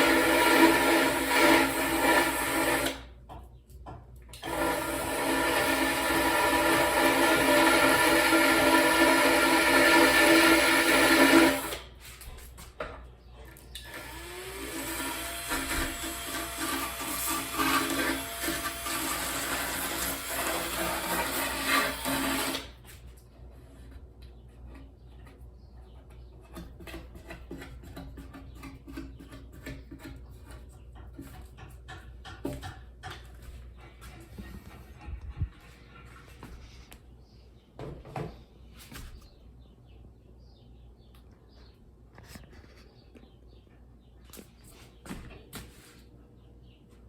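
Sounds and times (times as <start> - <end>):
drill sanding disc scratching: 0.0 - 3.0, 4.4 - 11.8, 13.9 - 22.8.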